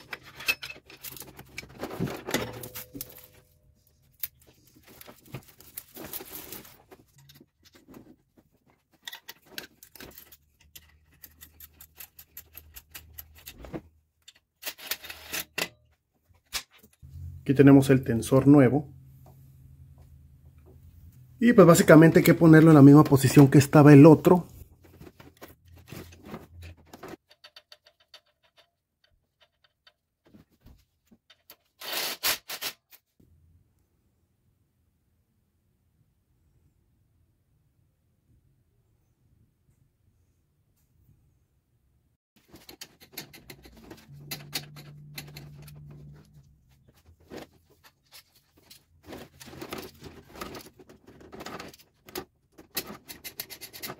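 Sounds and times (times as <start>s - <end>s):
metallic clicks and rattles of tools: 0.0s - 3.4s, 8.9s - 17.0s, 25.2s - 30.1s, 42.4s - 53.9s.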